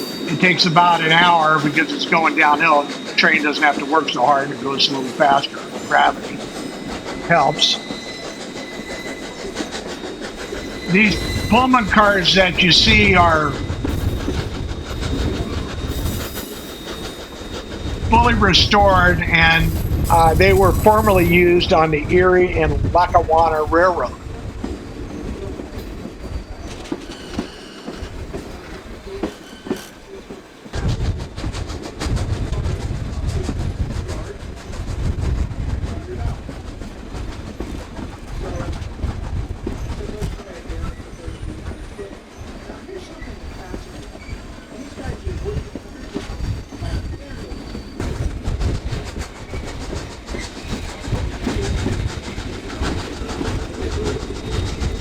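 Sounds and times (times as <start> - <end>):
train wheels clicking over rail joints: 0.0 - 21.5, 24.3 - 55.0
low train rumble: 0.0 - 55.0
thin wheel squeals: 5.4 - 12.4.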